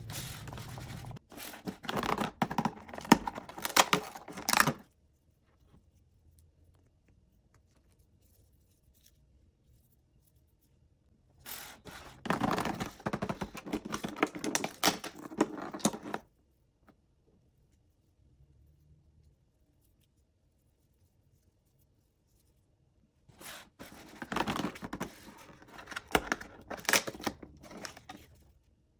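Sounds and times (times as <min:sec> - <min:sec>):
packaging crackling and tearing: 0:00.0 - 0:04.8, 0:11.6 - 0:16.2, 0:23.4 - 0:28.3.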